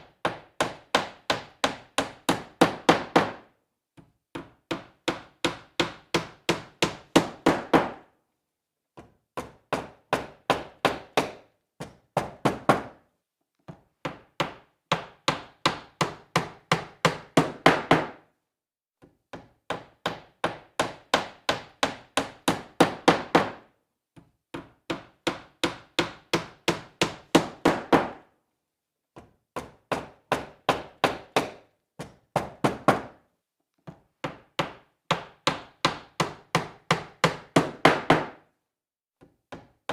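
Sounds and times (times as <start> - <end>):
hammer driving nail into wood: 0.0 - 8.1, 9.0 - 18.3, 19.0 - 23.7, 24.5 - 28.3, 29.2 - 38.5.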